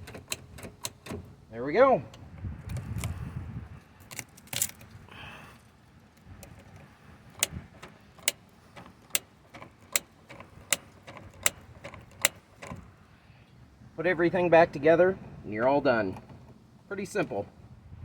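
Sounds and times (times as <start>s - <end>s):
clicks and rattles of car door: 0.0s - 1.5s, 6.4s - 13.0s, 16.0s - 16.7s.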